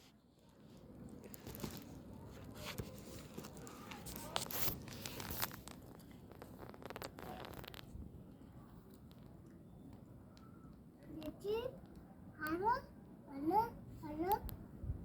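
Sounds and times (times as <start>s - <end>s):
peanut shells crackling: 3.4s - 7.9s.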